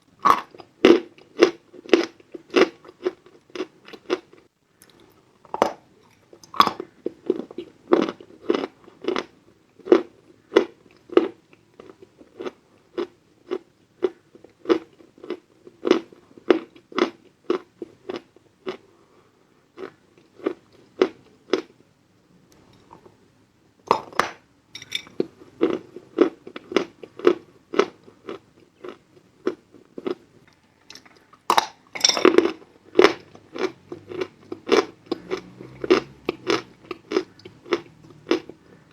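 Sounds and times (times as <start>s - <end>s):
chalk crunching while chewed: 32.4s - 38.9s.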